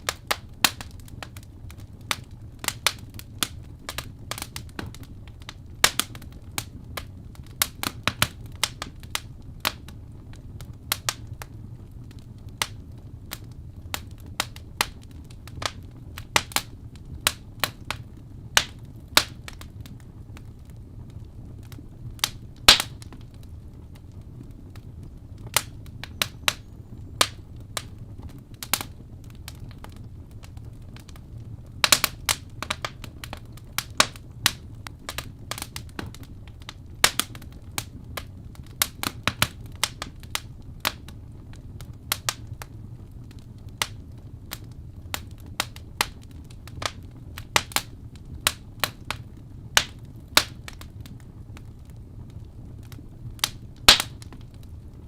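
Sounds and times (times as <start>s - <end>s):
logs crackling and popping: 0.0s - 55.0s
low rumble of flames: 0.0s - 55.0s.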